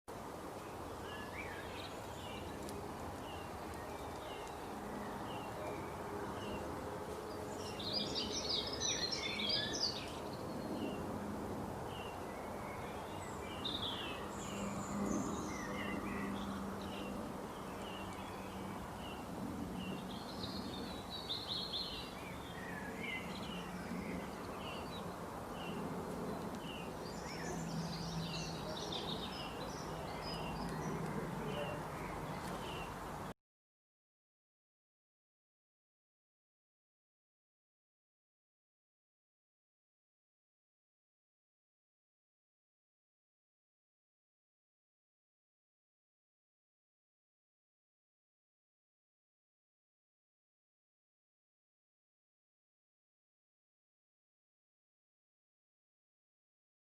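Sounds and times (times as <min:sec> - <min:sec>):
small birds chirping: 0:00.6 - 0:11.1, 0:11.9 - 0:33.3.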